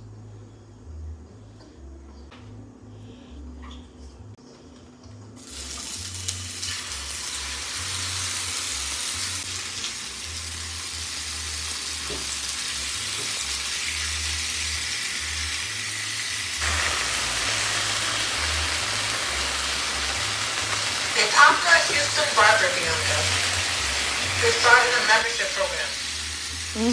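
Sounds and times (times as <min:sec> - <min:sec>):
food sizzling in a frying pan: 0:05.4 - 0:26.9.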